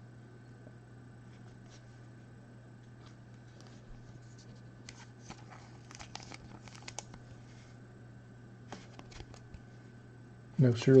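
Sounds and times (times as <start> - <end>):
steady low hum: 0.0 - 11.0
trading cards clicking and rustling: 4.9 - 7.2, 8.7 - 9.6.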